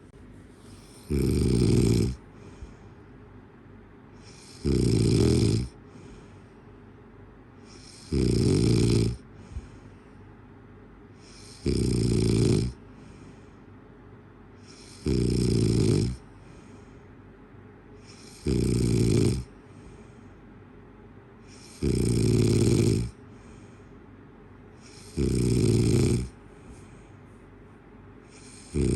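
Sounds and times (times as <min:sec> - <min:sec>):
loud rasping snores: 0:00.7 - 0:02.2, 0:04.2 - 0:06.1, 0:07.7 - 0:09.6, 0:11.2 - 0:12.8, 0:14.6 - 0:16.3, 0:18.0 - 0:19.5, 0:21.5 - 0:23.2, 0:24.8 - 0:26.4, 0:28.3 - 0:28.9
faint breath out: 0:02.2 - 0:03.3, 0:05.8 - 0:06.9, 0:09.2 - 0:10.5, 0:12.8 - 0:13.8, 0:16.2 - 0:17.3, 0:19.5 - 0:20.6, 0:23.2 - 0:25.2, 0:26.4 - 0:27.6.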